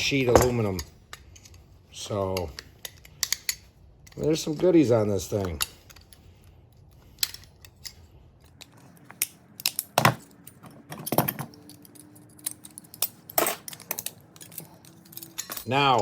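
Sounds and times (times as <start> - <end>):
metal parts clinking: 0.0 - 16.0.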